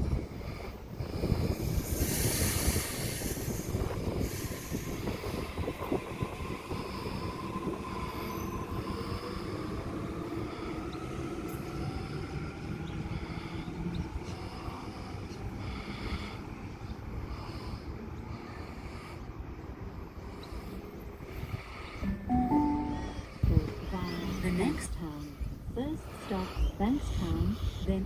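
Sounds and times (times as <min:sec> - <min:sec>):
train rumble and wheel noise: 0:00.0 - 0:28.0
train hiss: 0:00.5 - 0:10.8.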